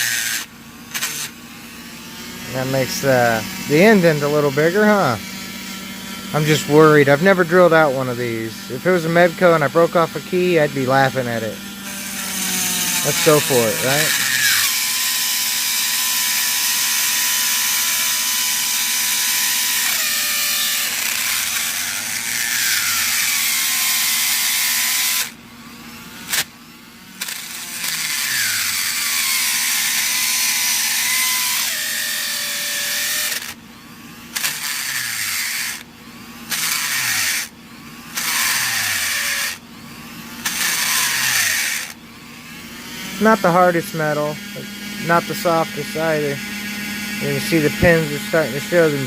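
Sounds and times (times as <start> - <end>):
electric drill grinding metal: 0.0 - 49.0.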